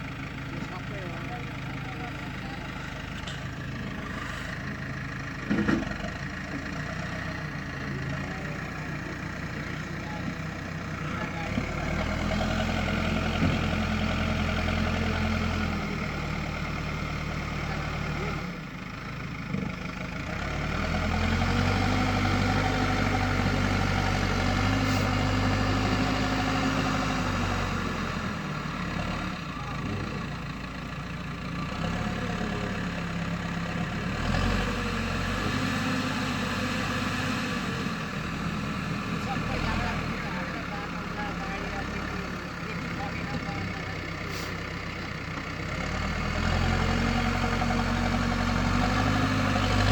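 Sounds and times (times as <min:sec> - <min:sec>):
diesel engine running: 0:00.0 - 0:49.9.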